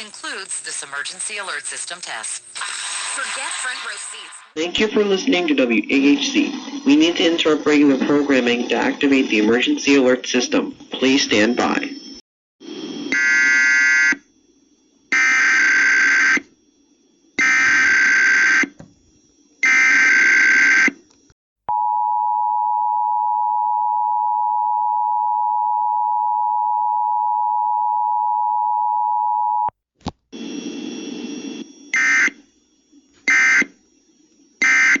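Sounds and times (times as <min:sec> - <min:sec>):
raspy digital data bursts: 0:00.0 - 0:11.9
noise: 0:00.0 - 0:14.7, 0:30.0 - 0:35.0.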